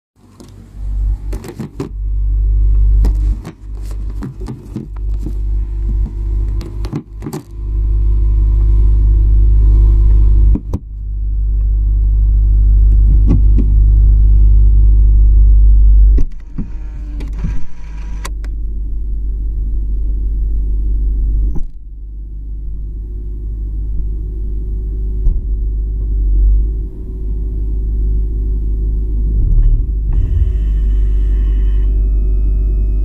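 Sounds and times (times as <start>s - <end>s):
low road rumble: 0.2s - 33.0s
suspension creaking: 2.7s - 8.1s, 29.1s - 32.6s.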